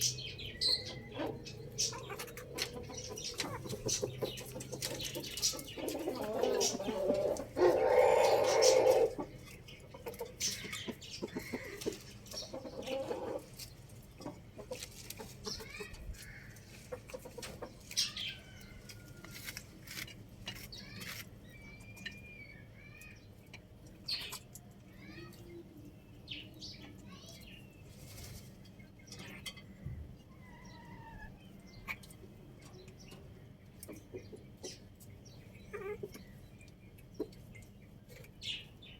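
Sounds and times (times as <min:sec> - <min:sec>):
chicken clucking: 0:00.0 - 0:20.7, 0:30.4 - 0:36.3
small birds chirping: 0:00.0 - 0:38.9.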